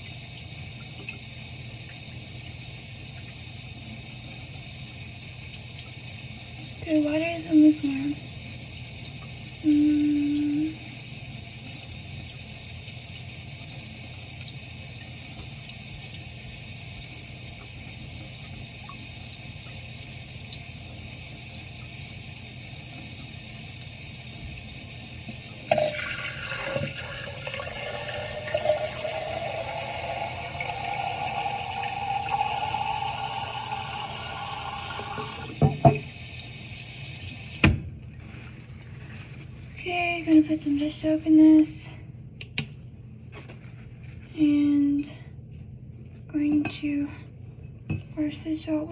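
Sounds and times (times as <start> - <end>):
sink tap running: 0.0 - 37.8
water pouring into container: 25.5 - 36.6.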